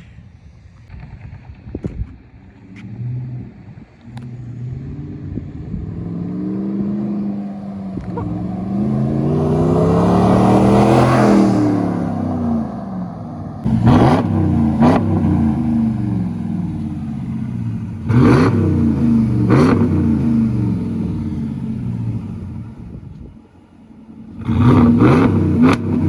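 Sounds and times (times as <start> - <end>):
pickup truck engine accelerating past: 4.4 - 22.6.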